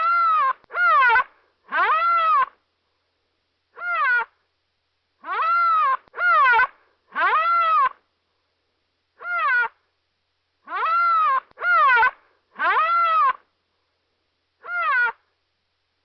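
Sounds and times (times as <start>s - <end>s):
animal-like pitched cries: 0.0s - 2.6s, 3.8s - 4.4s, 5.2s - 8.0s, 9.2s - 9.8s, 10.7s - 13.4s, 14.6s - 15.3s.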